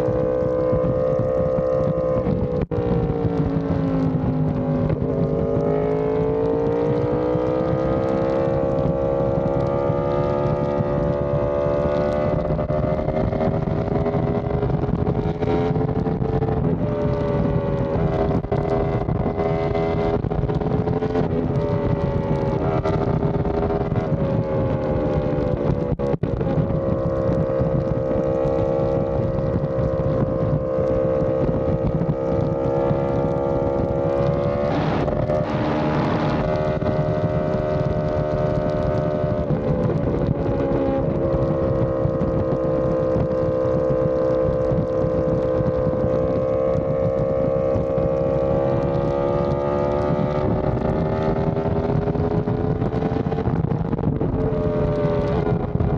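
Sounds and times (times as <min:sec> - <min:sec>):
motorcycle engine at steady revs: 0:00.0 - 0:55.9
wind noise: 0:00.0 - 0:55.9.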